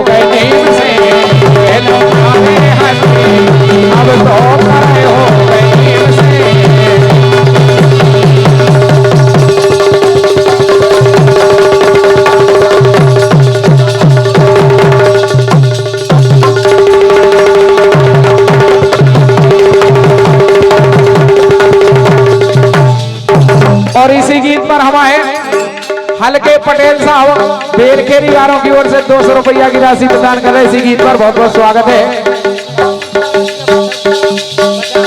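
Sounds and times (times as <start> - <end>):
held melody tone: 0.0 - 16.7
hand drum rhythm: 0.0 - 35.0.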